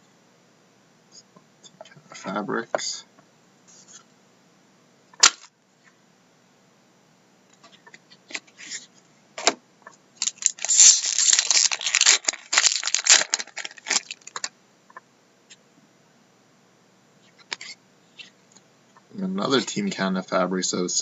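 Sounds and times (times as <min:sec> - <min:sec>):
foil wrapper crinkling and tearing: 0:10.2 - 0:14.5.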